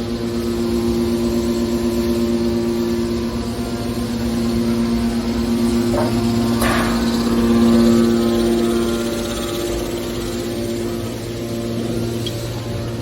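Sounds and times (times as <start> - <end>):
hydraulic power unit humming: 0.0 - 13.0
metal scrape: 5.8 - 7.4.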